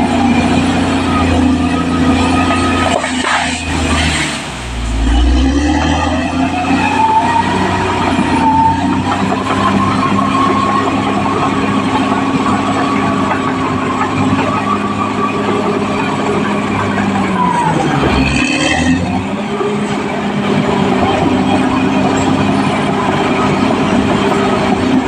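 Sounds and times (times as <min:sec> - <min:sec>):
bulldozer diesel engine running: 0:00.0 - 0:25.0.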